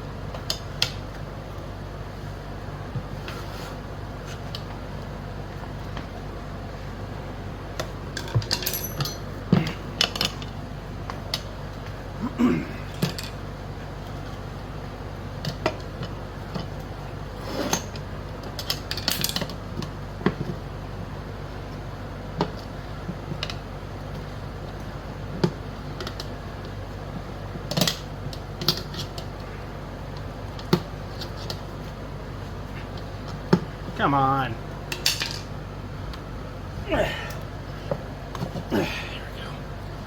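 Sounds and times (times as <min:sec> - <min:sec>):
steady low hum: 0:00.0 - 0:40.0
tire tools clinking on wheel rim: 0:07.8 - 0:11.5.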